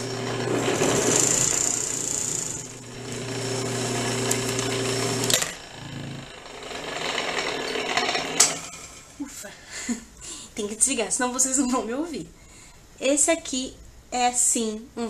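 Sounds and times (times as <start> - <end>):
sewing machine running shrill: 0.0 - 8.5.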